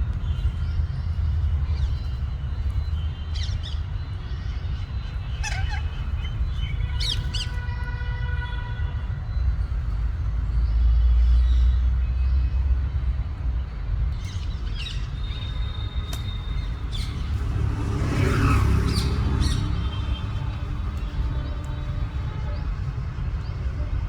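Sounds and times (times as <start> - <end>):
parrots squawking and chirping: 5.2 - 7.6.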